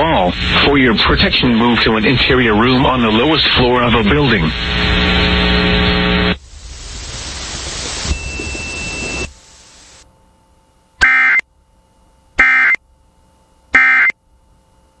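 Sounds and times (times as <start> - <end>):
radio hiss: 0.0 - 10.1
harsh buzzing digital data bursts: 2.3 - 10.0, 12.4 - 12.8, 13.8 - 14.2.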